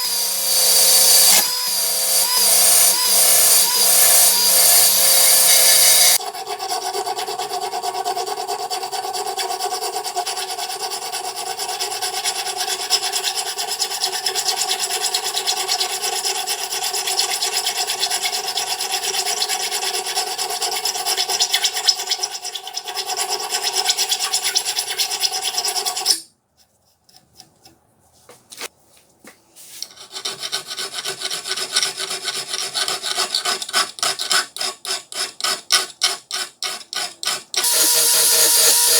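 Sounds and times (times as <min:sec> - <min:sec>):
back-and-forth strokes: 0:00.0 - 0:06.2.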